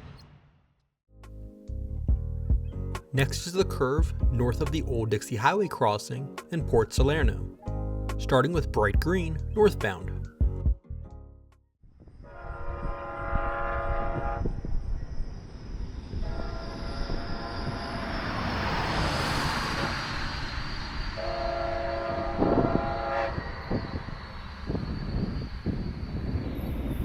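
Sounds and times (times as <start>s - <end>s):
train horn blasts: 12.2s - 14.8s, 16.2s - 18.0s, 21.2s - 24.0s
train rumbling on rails: 12.2s - 27.0s.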